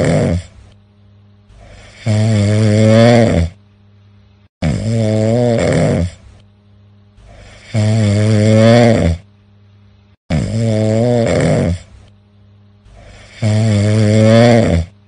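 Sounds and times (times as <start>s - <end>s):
person snoring loudly: 0.0s - 0.6s, 1.5s - 3.6s, 4.6s - 6.3s, 7.2s - 9.3s, 10.3s - 12.0s, 12.9s - 15.0s.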